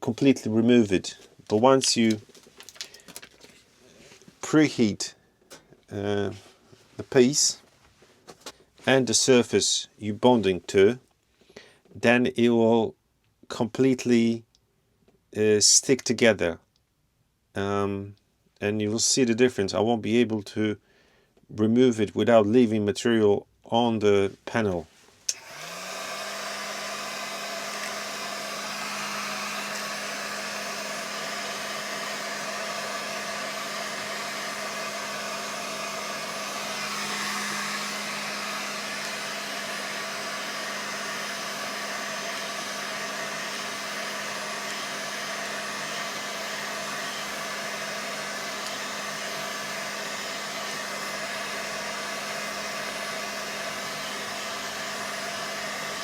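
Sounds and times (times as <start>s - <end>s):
hot-air blower running: 25.3s - 56.0s.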